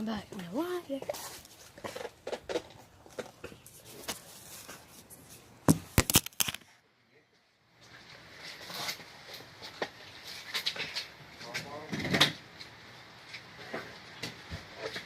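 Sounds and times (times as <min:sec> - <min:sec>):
rustling: 0:00.2 - 0:06.7.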